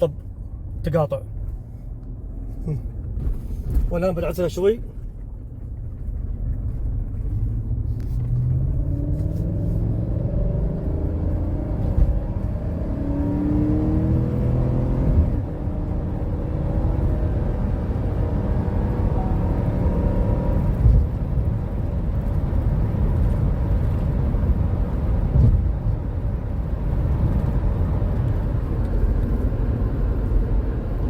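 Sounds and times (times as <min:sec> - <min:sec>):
low road rumble: 0:00.0 - 0:31.0
engine accelerating: 0:05.9 - 0:25.5.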